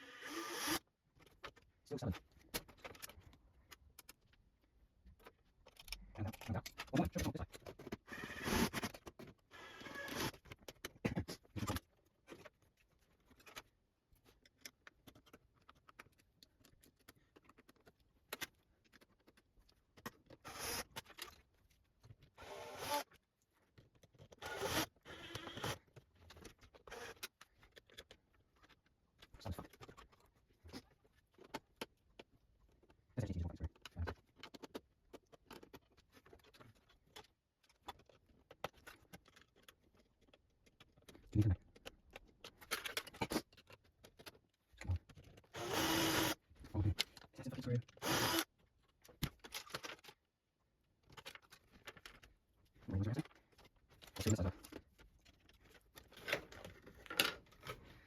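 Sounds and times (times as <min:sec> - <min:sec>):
small plastic and metal clicks: 0:05.2 - 0:08.1, 0:13.2 - 0:45.6, 0:46.3 - 0:50.2.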